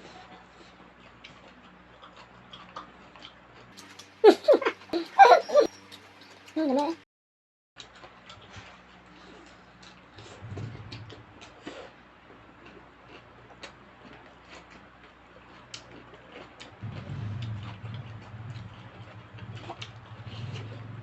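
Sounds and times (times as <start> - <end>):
chewing: 0.0 - 6.9, 7.8 - 21.0
low steady hum: 7.8 - 21.0.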